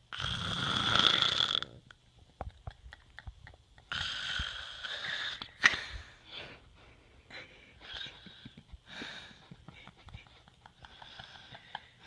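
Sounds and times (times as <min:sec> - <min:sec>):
person snoring: 0:00.1 - 0:01.8, 0:03.9 - 0:05.5.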